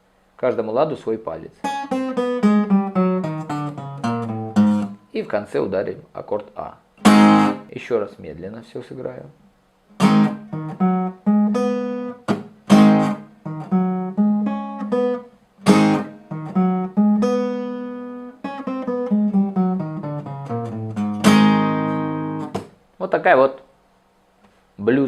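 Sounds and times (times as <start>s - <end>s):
guitar playing blues riff: 1.6s - 5.3s, 7.0s - 7.7s, 9.9s - 22.8s.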